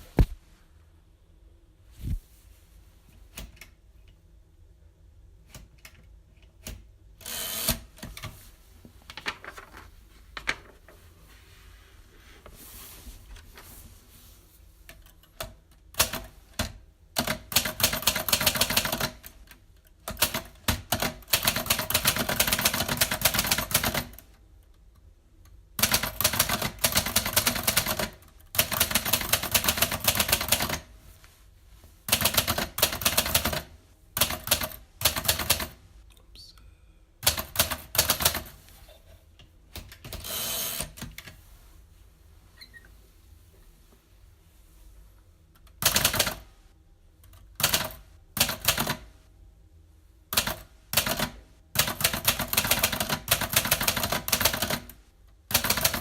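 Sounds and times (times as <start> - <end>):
typewriter keys typing: 15.0 - 24.2, 25.8 - 30.9, 32.1 - 35.8, 37.2 - 38.6, 45.8 - 46.5, 47.3 - 49.1, 50.4 - 56.0.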